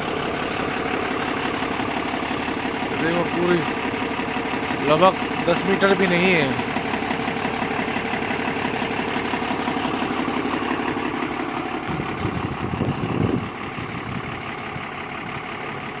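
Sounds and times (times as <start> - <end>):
truck diesel engine idling: 0.0 - 16.0.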